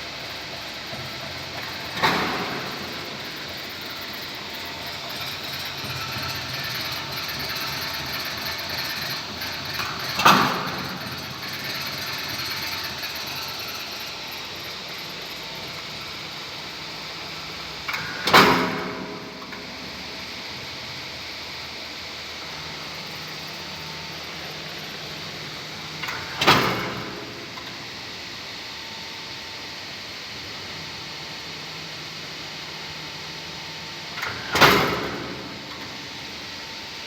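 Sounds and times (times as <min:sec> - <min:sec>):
sheet metal machine running: 0:00.0 - 0:28.0.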